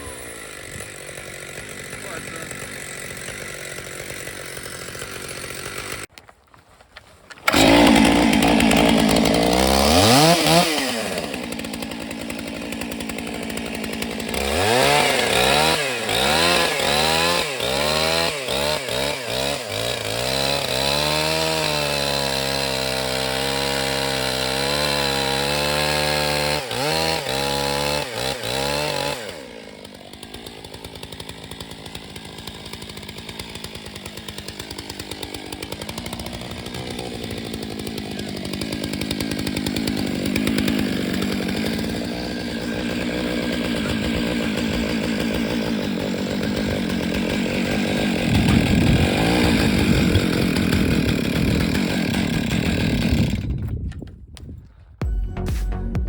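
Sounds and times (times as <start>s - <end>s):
chainsaw revving: 0.0s - 6.1s, 7.4s - 53.7s.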